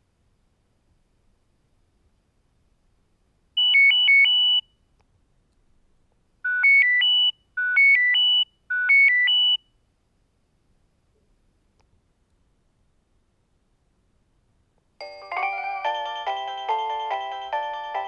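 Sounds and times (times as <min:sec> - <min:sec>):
phone alarm beep phrase: 0:03.6 - 0:04.6, 0:06.5 - 0:09.6.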